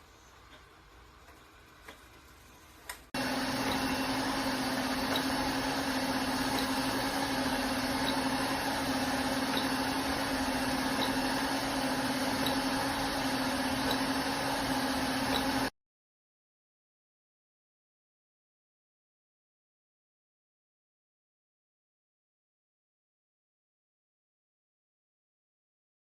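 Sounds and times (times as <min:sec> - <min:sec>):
robot vacuum cleaner whirring: 0:03.2 - 0:15.7.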